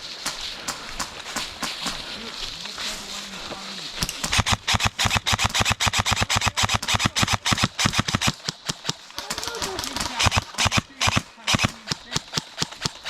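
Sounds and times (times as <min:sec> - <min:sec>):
airsoft rifle full-auto burst: 0:04.0 - 0:13.0.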